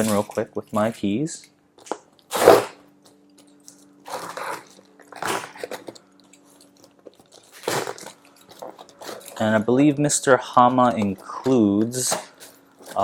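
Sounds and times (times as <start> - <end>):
tape tearing: 1.9 - 2.8, 3.7 - 6.0, 6.8 - 9.6, 11.0 - 13.0
cardboard crunching: 2.3 - 2.8, 4.0 - 9.8, 10.8 - 13.0.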